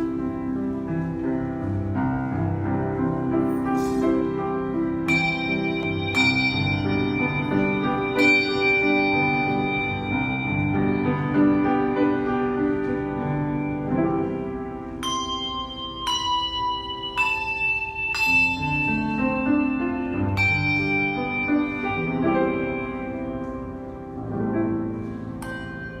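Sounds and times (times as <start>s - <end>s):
bells playing a tune: 0.0s - 26.0s.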